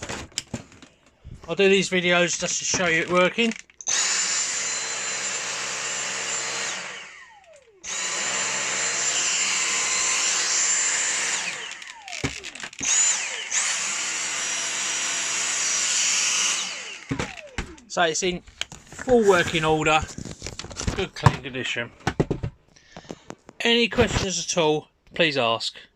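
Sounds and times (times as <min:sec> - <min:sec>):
vacuum cleaner motor whine: 0:03.8 - 0:20.0.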